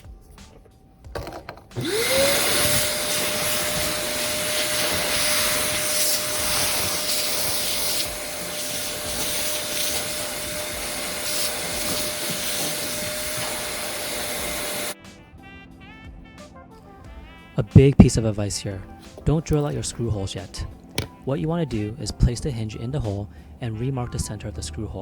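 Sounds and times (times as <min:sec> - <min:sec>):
small electric motor running: 0:01.8 - 0:15.0.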